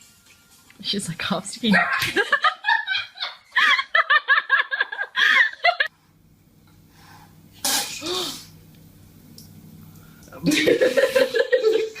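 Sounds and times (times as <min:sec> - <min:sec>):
faint steady hum: 0:00.0 - 0:12.0
person laughing in rapid bursts: 0:01.7 - 0:05.9, 0:10.4 - 0:12.0.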